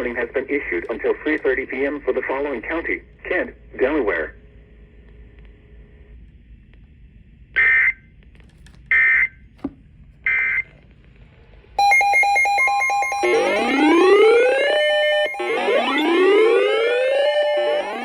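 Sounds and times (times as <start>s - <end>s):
digital data tone bursts: 11.8s - 18.0s
pulsing electronic alarm: 11.8s - 18.0s.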